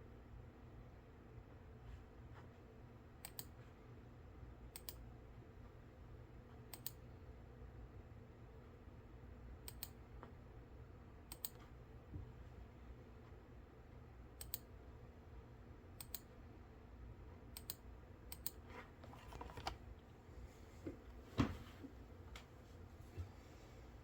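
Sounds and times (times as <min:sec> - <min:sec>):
low steady hum: 0:00.0 - 0:24.0
computer mouse clicking: 0:03.2 - 0:03.6, 0:04.7 - 0:05.0, 0:06.7 - 0:07.0, 0:09.6 - 0:10.0, 0:11.3 - 0:11.7, 0:14.4 - 0:14.7, 0:16.0 - 0:16.3, 0:17.5 - 0:19.8.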